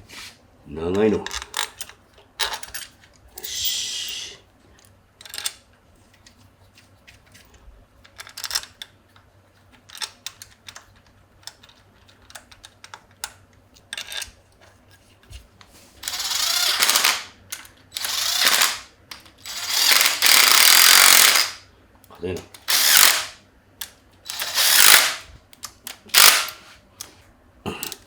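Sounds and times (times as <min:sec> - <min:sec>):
ratchet wrench spinning: 0:16.0 - 0:17.2, 0:17.9 - 0:18.8, 0:19.5 - 0:21.6, 0:22.7 - 0:23.3, 0:24.3 - 0:25.2, 0:26.1 - 0:26.6.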